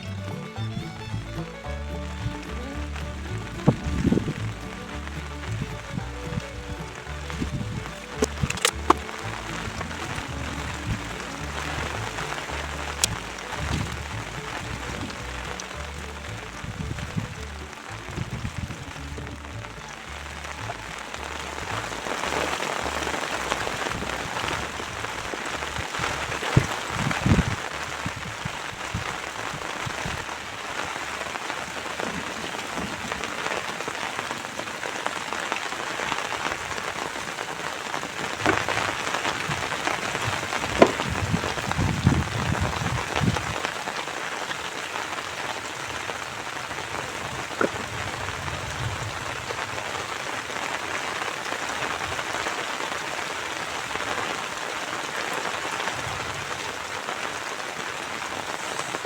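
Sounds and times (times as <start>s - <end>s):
dull low thumps: 0.0s - 29.1s, 38.4s - 43.7s
steady rain: 0.0s - 59.0s.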